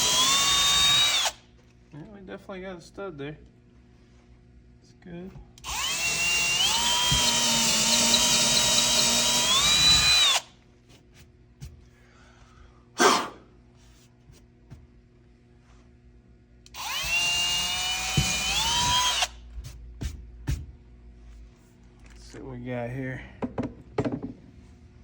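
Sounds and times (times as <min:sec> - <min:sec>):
electric drill boring into wood: 0:00.0 - 0:01.4, 0:05.6 - 0:10.5, 0:16.7 - 0:19.4.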